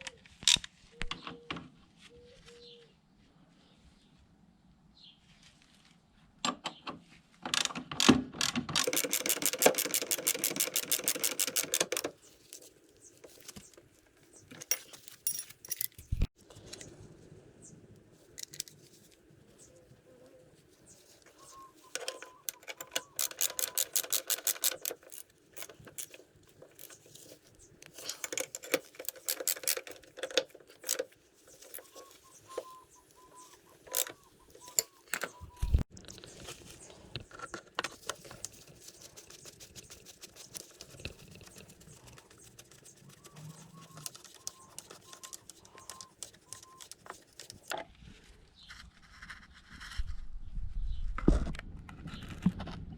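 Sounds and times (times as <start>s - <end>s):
rapid metallic clicking: 8.8s - 12.1s, 22.0s - 26.2s.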